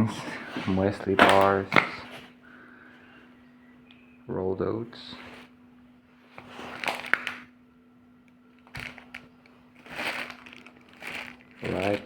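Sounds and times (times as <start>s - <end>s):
packages rustling: 0.0s - 2.4s, 6.2s - 7.5s, 8.5s - 12.0s
faint steady hum: 0.0s - 12.0s
item set down knock: 0.6s - 2.0s.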